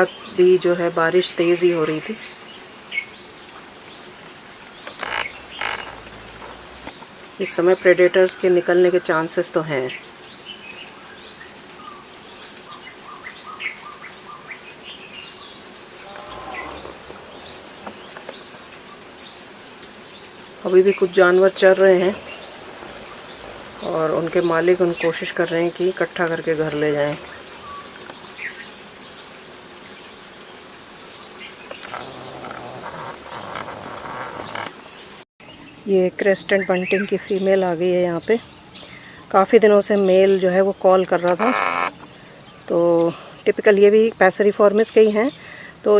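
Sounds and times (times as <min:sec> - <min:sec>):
high insect trill: 0:00.0 - 0:08.7, 0:10.0 - 0:45.9
low falling bird notes: 0:03.8 - 0:07.2, 0:15.2 - 0:29.2
low drawn-out calls: 0:04.4 - 0:07.1, 0:15.7 - 0:19.9, 0:20.6 - 0:28.3, 0:31.6 - 0:35.0
rising bird chirps: 0:15.9 - 0:19.5.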